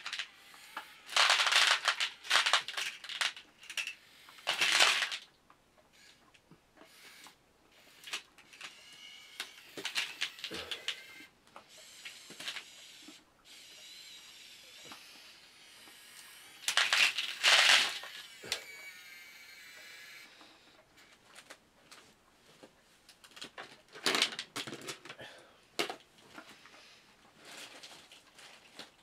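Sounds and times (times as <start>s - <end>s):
small electric motors whining: 0.0s - 5.2s, 5.9s - 6.2s, 6.8s - 21.2s
plastic clicks and clatter: 0.0s - 7.4s, 8.0s - 13.2s, 15.8s - 18.9s, 21.0s - 29.0s.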